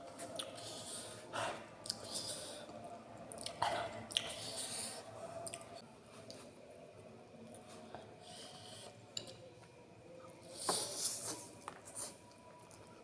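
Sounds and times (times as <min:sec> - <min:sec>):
person chewing noodles: 0:00.2 - 0:05.7.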